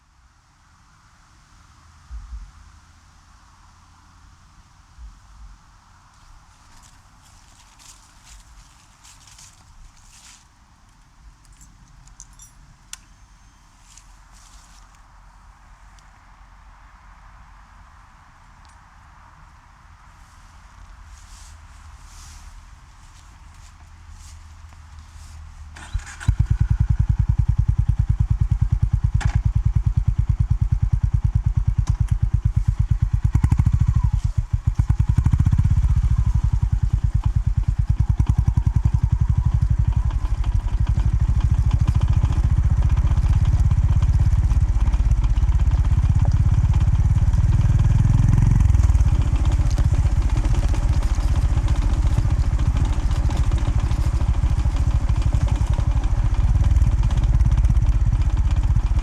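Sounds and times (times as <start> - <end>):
motorcycle engine thumping: 25.7 - 59.0.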